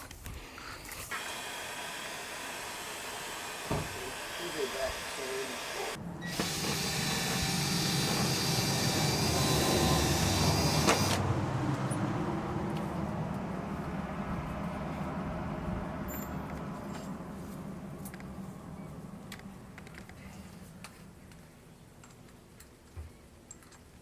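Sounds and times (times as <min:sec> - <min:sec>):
power tool grinding hiss: 0:01.0 - 0:11.2
motor hum coasting down: 0:01.2 - 0:20.9.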